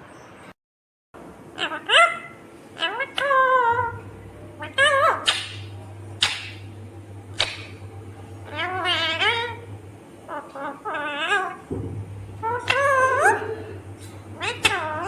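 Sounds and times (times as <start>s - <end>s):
parrot calling: 1.5s - 6.6s, 8.4s - 11.7s, 12.4s - 15.0s
sharp click: 5.3s - 5.6s, 6.2s - 6.6s, 7.3s - 7.8s.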